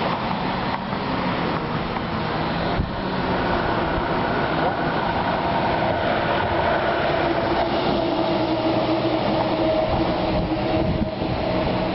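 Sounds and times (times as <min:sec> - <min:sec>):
steady rushing background: 0:00.0 - 0:11.9
warning siren wailing: 0:03.7 - 0:11.9.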